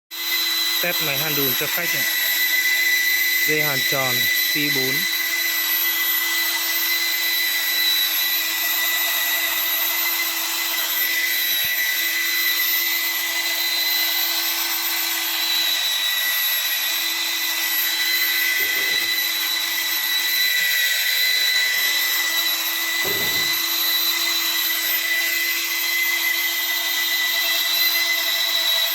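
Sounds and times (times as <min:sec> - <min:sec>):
motor high whine: 0:00.2 - 0:28.9.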